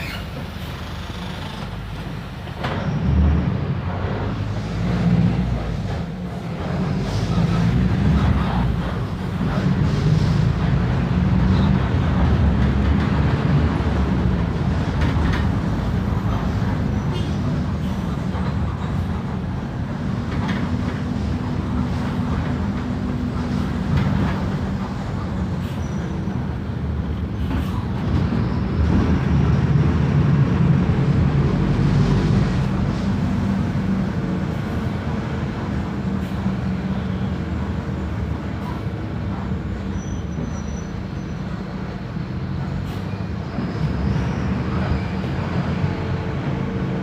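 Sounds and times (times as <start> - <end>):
bus engine low rumble: 0.0 - 47.0.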